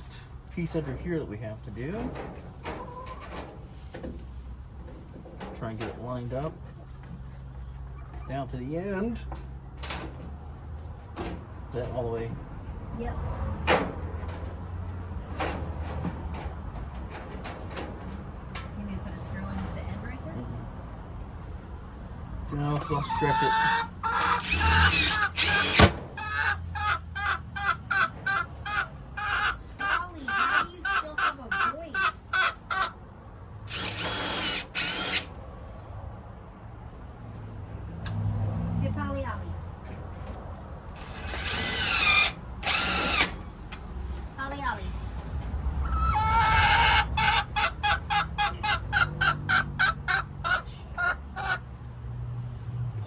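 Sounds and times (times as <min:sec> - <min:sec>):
hen squawking: 0:22.7 - 0:33.0, 0:45.8 - 0:51.7.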